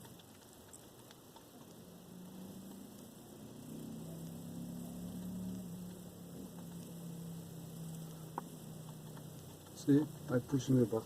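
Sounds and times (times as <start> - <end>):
faint clicks: 0.0 - 1.8, 7.8 - 10.0
low electrical hum: 0.0 - 11.0.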